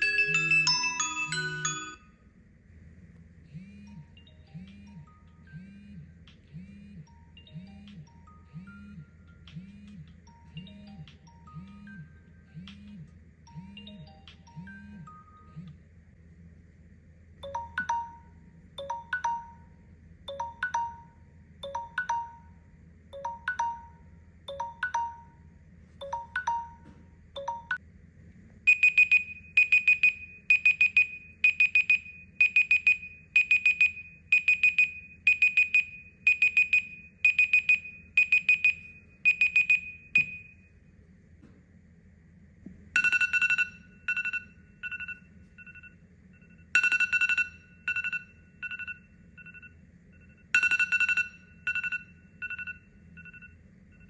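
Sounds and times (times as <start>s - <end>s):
high-pitched beeping alarm: 0.0s - 2.0s, 3.6s - 15.8s, 28.7s - 40.6s, 43.0s - 54.0s
alarm tone: 0.0s - 2.1s, 3.6s - 15.8s, 43.0s - 54.0s
repeating alarm chime: 0.0s - 2.1s, 6.6s - 15.7s, 28.7s - 40.6s, 43.0s - 54.0s.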